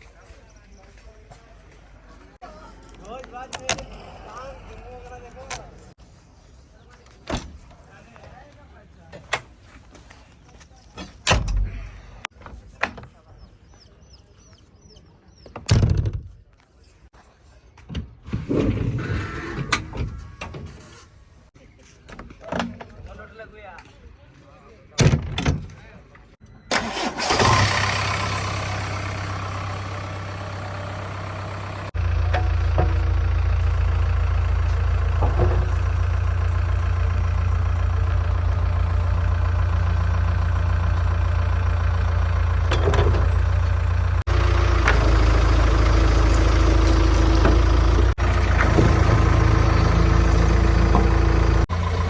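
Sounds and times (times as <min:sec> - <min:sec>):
diesel engine idling: 0:26.8 - 0:52.0
short clanks: 0:41.5 - 0:51.7.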